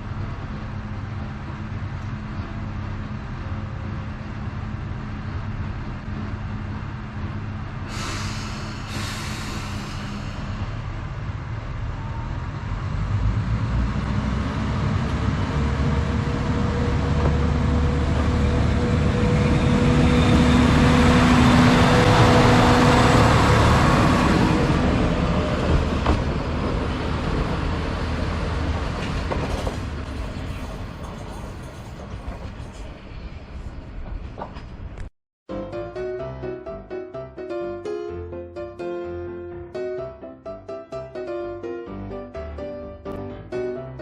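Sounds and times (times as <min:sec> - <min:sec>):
diesel railcar engine: 0:00.0 - 0:35.1
train wheels on rails: 0:07.2 - 0:35.1.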